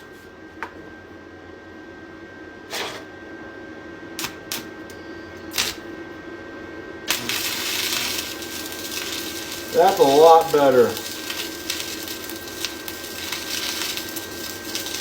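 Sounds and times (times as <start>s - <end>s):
welding arc crackling: 4.2s - 4.7s, 5.5s - 5.9s, 7.1s - 15.0s.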